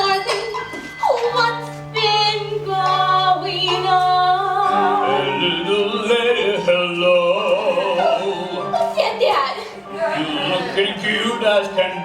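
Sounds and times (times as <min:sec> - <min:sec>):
person singing with vibrato: 0:00.0 - 0:08.9
sustained musical accompaniment: 0:00.0 - 0:12.0.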